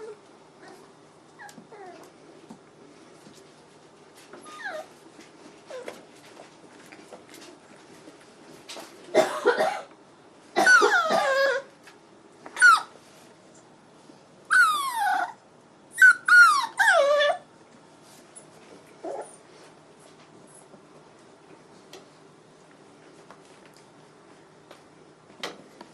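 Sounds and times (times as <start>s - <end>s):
puppy whining and yelping: 0.0s - 2.1s, 4.3s - 5.0s, 10.6s - 11.7s, 12.5s - 13.0s, 14.5s - 17.5s, 19.0s - 19.5s.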